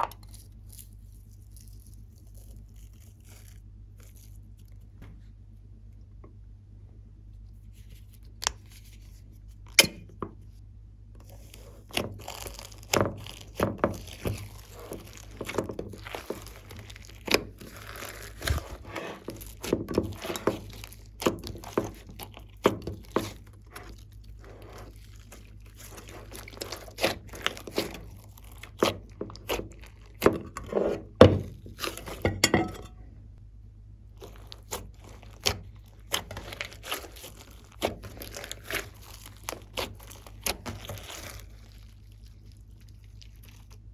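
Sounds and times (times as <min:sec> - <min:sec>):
steady low hum: 0:04.7 - 0:43.9
slime squishing and popping: 0:11.2 - 0:32.4, 0:34.2 - 0:43.9.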